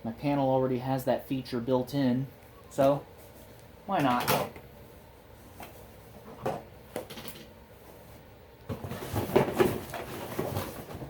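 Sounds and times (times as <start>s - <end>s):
objects clattering in cardboard box: 8.7s - 11.0s.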